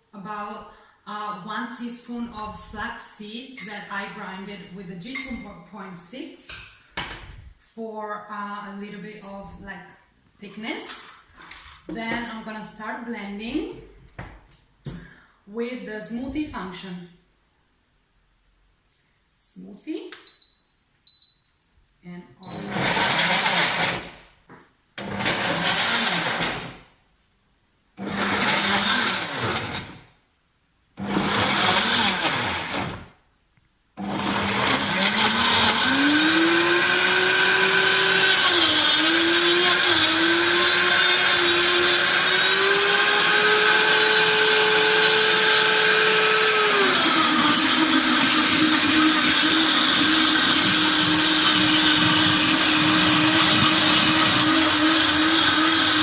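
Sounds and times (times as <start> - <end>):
blender motor running: 22.5 - 24.0, 25.0 - 26.8, 28.0 - 30.0, 31.0 - 33.0, 34.0 - 56.0.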